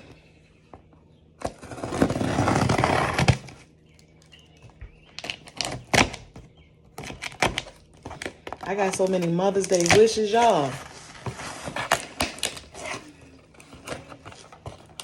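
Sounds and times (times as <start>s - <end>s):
packaging crackling: 6.9s - 15.0s.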